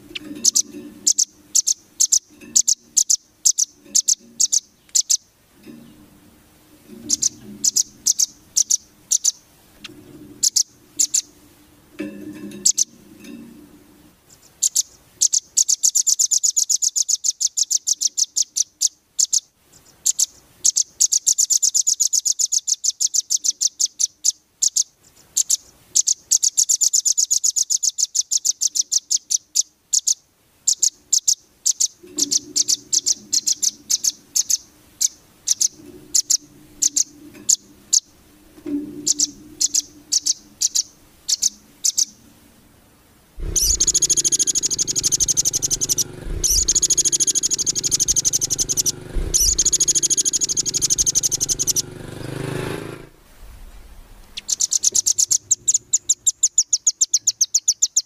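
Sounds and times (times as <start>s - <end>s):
songbird chirping rapidly: 0.0s - 6.1s, 6.9s - 11.4s, 12.5s - 13.3s, 14.2s - 42.6s, 43.4s - 53.0s, 54.2s - 58.0s
faint low hum: 0.0s - 15.4s, 30.7s - 56.5s.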